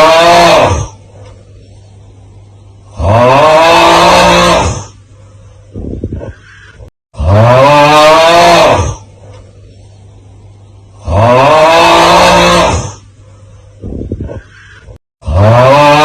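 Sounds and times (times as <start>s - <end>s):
man's strained snoring groan: 0.0s - 1.0s, 2.9s - 5.0s, 7.2s - 9.1s, 11.0s - 13.0s, 15.2s - 16.0s.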